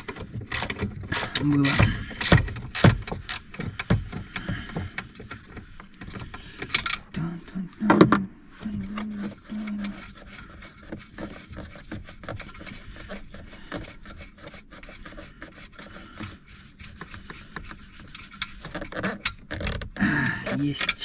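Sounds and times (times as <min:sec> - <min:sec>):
scraping and rubbing: 0:00.0 - 0:21.0.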